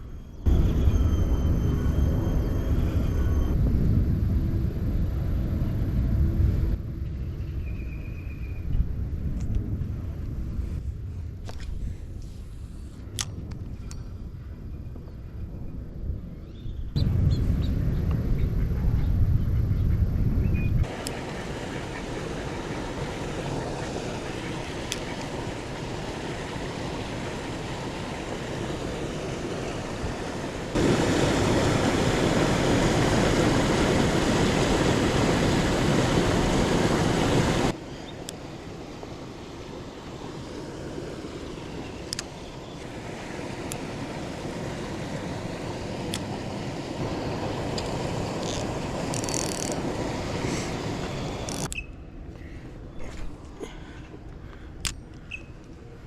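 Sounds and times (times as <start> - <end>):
steady outdoor rushing noise: 0.0 - 56.0.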